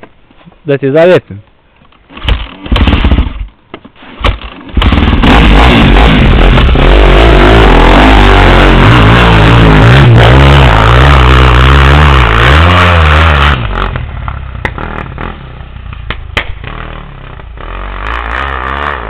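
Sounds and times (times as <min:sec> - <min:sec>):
atv engine revving under load: 0:04.7 - 0:15.8, 0:16.5 - 0:19.0.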